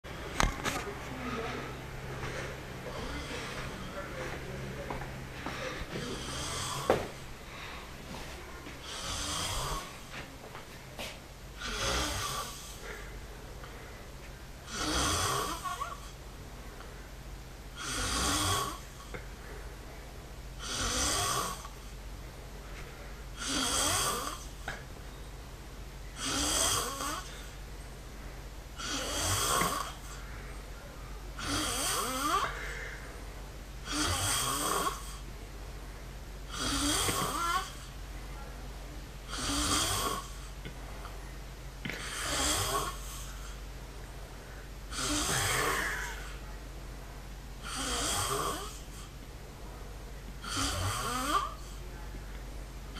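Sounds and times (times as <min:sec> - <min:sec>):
steady low hum: 0:00.0 - 0:52.9
man snoring: 0:02.9 - 0:04.0, 0:05.5 - 0:07.1, 0:08.8 - 0:10.1, 0:11.6 - 0:13.0, 0:14.6 - 0:16.1, 0:17.8 - 0:19.0, 0:20.6 - 0:21.8, 0:23.4 - 0:24.6, 0:26.2 - 0:27.5, 0:28.8 - 0:30.2, 0:31.4 - 0:32.8, 0:33.8 - 0:35.2, 0:36.5 - 0:37.9, 0:39.3 - 0:40.4, 0:41.9 - 0:43.5, 0:44.9 - 0:46.4, 0:47.6 - 0:49.1, 0:50.4 - 0:51.6.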